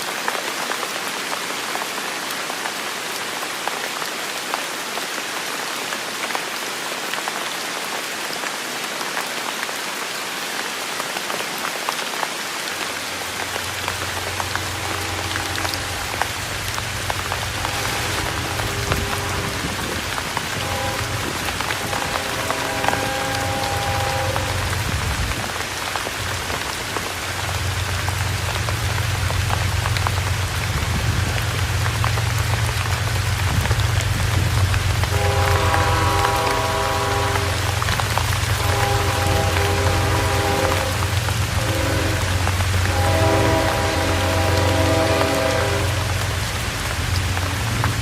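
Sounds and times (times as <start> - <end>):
rain falling on a surface: 0.0 - 48.0
distant train horn: 13.6 - 25.0, 35.0 - 46.6.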